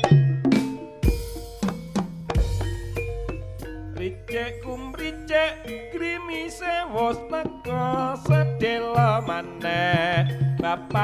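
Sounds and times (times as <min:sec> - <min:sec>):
drum strokes: 0:00.0 - 0:06.3
ornamented melodic lead: 0:00.0 - 0:11.0.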